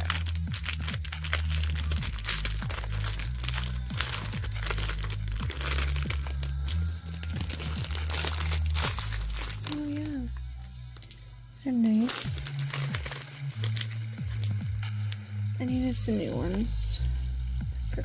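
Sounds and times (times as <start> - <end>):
packaging crinkling and rustling: 0.0 - 10.4, 11.9 - 14.6
background music with bass: 0.0 - 18.0.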